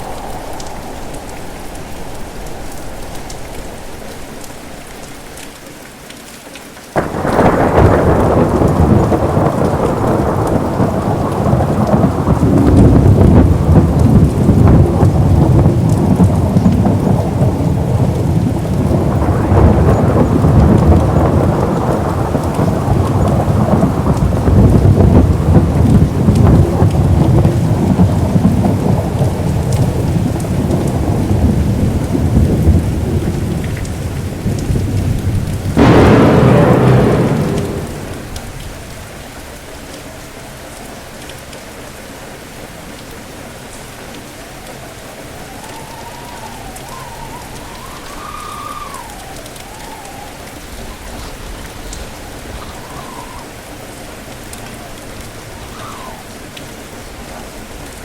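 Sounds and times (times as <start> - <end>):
thunder rumbling: 0.0 - 5.6, 7.0 - 39.0, 45.4 - 53.4
steady rain: 0.0 - 58.0.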